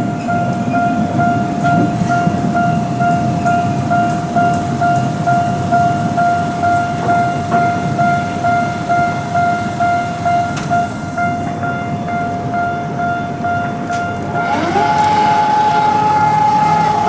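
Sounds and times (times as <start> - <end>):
level crossing warning bell: 0.0 - 17.0
subway train rumbling: 0.0 - 17.0.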